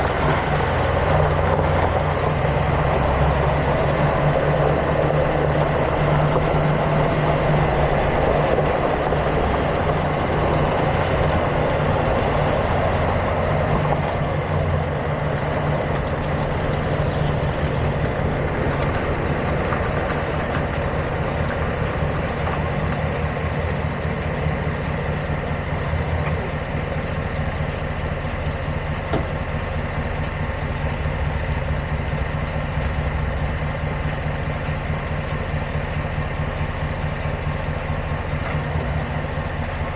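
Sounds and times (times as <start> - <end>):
engine idling: 0.0 - 39.9
engine pops: 29.0 - 29.6.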